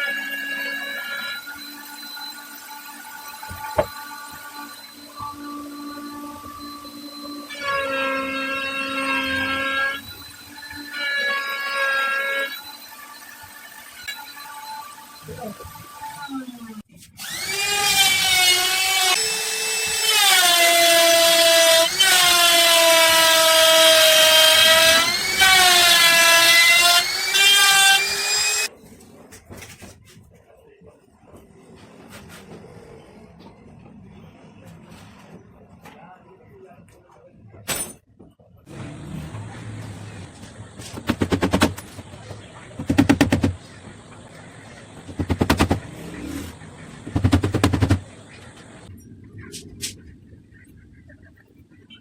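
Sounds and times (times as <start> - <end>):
power tool motor whining: 17.2 - 28.7.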